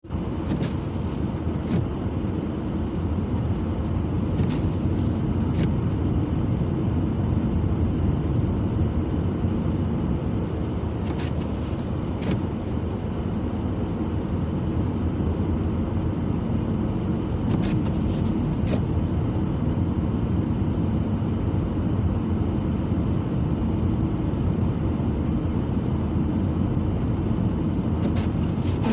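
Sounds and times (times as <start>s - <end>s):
car driving rumble: 0.0s - 28.9s.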